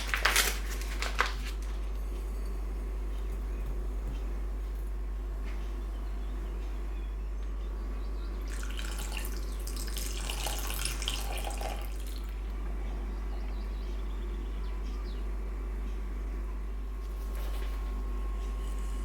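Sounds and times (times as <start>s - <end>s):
steady low hum: 0.0s - 19.0s
water running from a tap: 8.5s - 12.3s.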